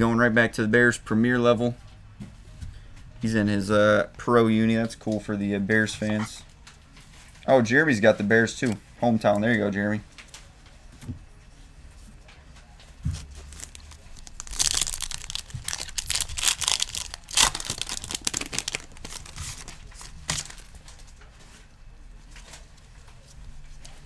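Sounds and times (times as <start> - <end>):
foil pack tearing and crinkling: 13.1 - 20.9
sharp crack: 13.2 - 20.7.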